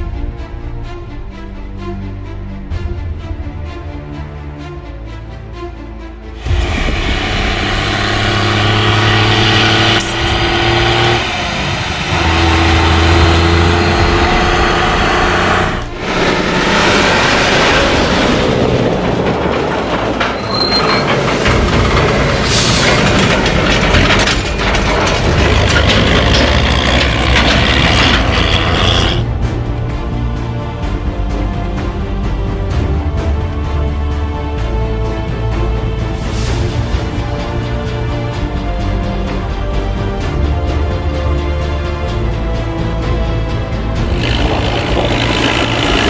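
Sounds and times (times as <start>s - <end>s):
tractor engine running: 6.4s - 29.4s, 43.8s - 46.0s.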